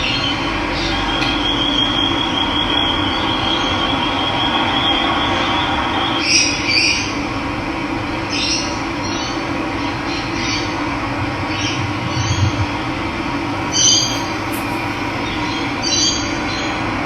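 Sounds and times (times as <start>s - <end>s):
running water rushing: 13.6s - 15.8s
bird short calls: 13.7s - 15.7s.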